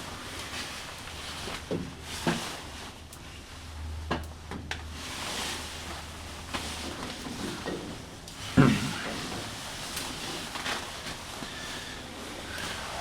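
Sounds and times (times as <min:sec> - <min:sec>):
scraping and rustling: 0:04.9 - 0:13.0.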